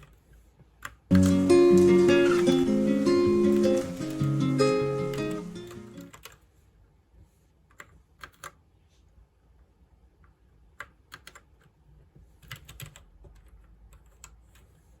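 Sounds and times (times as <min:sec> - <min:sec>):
keyboard keys clicking: 0:00.8 - 0:06.4, 0:12.4 - 0:14.7.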